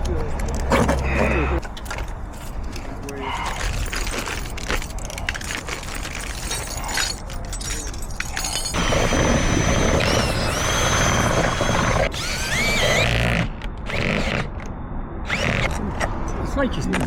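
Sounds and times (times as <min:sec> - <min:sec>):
mechanical whir with whine: 0:08.8 - 0:17.0.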